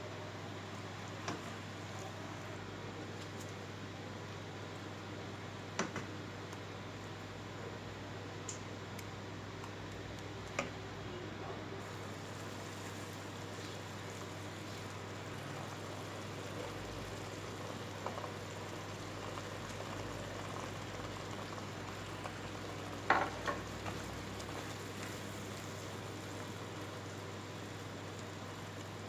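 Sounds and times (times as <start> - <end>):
food sizzling in a pan: 11.8 - 29.0.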